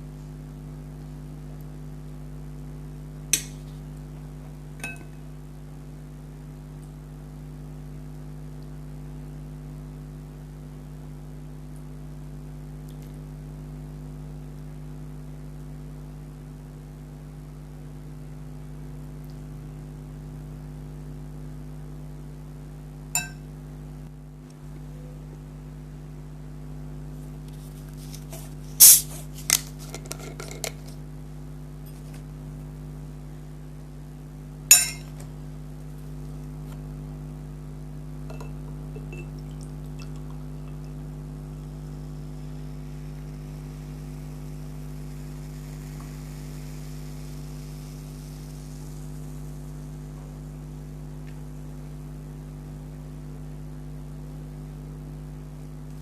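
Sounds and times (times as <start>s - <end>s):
low electrical hum: 0.0s - 56.0s
cutlery clinking on dishware: 34.7s - 35.1s.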